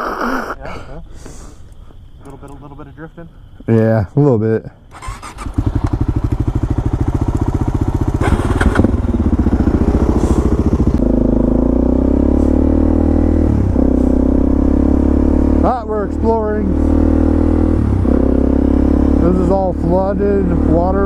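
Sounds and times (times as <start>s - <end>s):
motorcycle engine running: 5.0s - 21.0s.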